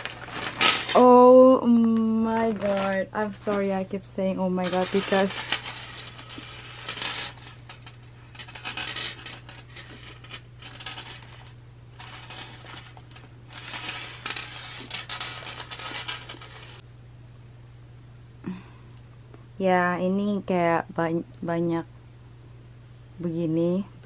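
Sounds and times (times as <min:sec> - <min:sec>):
plastic packaging crinkling: 0:00.0 - 0:01.2, 0:01.8 - 0:03.9, 0:04.6 - 0:16.8.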